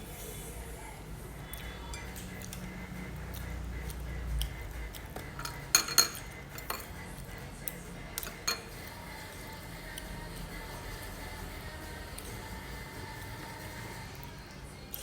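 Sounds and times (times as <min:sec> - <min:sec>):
utensils clinking against bowl: 0:01.5 - 0:02.7, 0:04.9 - 0:09.0.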